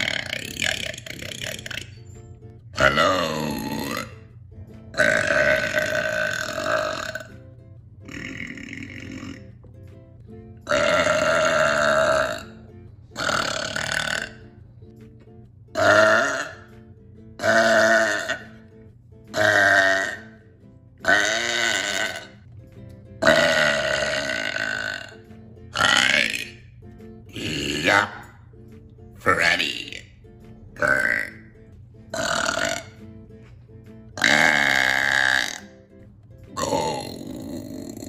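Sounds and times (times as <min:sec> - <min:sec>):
person burping loudly: 0:00.0 - 0:02.0, 0:02.8 - 0:04.4, 0:05.0 - 0:07.3, 0:08.0 - 0:09.6, 0:10.6 - 0:14.6, 0:15.7 - 0:16.7, 0:17.4 - 0:18.6, 0:19.3 - 0:20.4, 0:21.0 - 0:22.4, 0:23.2 - 0:26.7, 0:27.3 - 0:28.3, 0:30.8 - 0:33.0, 0:34.2 - 0:35.8, 0:36.5 - 0:38.0.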